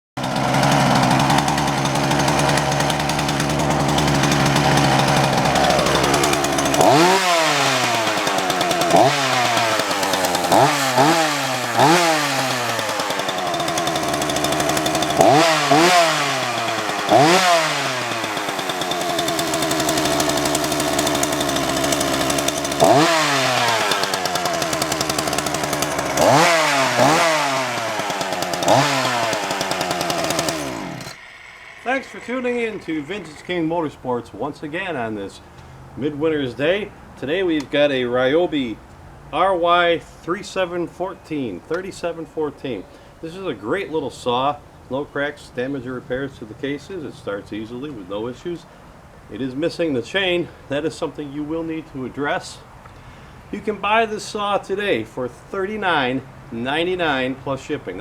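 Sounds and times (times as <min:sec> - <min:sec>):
chainsaw engine revving: 0:00.2 - 0:37.7, 0:49.4 - 0:58.0.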